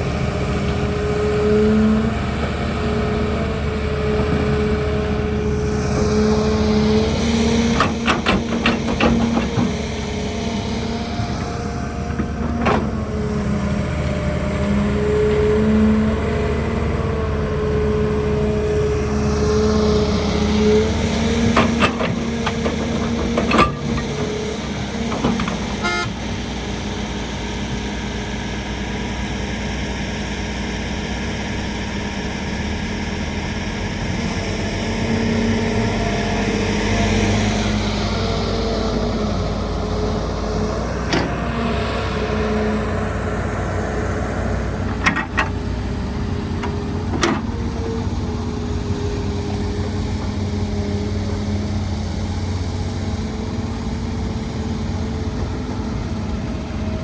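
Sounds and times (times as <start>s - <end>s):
excavator engine running: 0.0s - 57.0s
clanks and knocks of digging: 7.7s - 10.0s, 11.2s - 13.1s, 21.2s - 26.1s, 44.9s - 48.0s.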